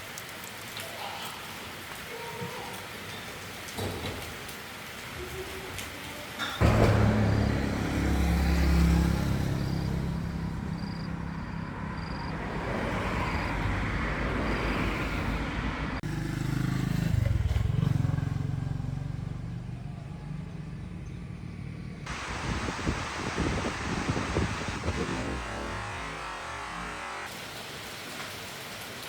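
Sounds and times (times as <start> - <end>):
engine running: 6.6 - 12.8, 15.9 - 27.3.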